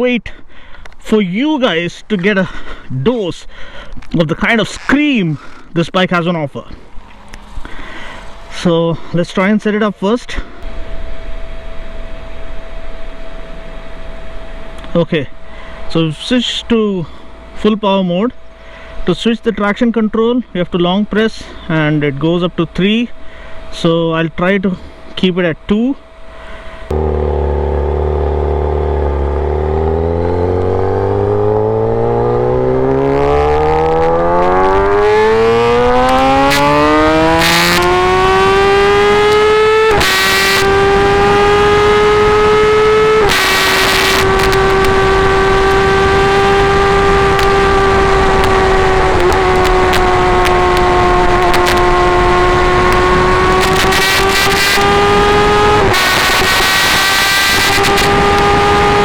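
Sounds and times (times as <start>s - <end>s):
motorcycle engine revving: 26.2s - 59.0s.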